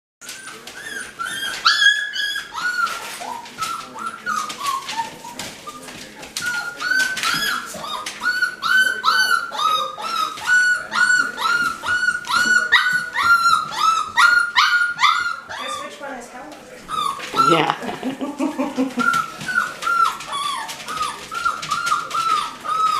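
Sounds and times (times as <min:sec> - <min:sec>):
puppies whimpering and squealing: 0:00.2 - 0:16.2, 0:16.8 - 0:22.9.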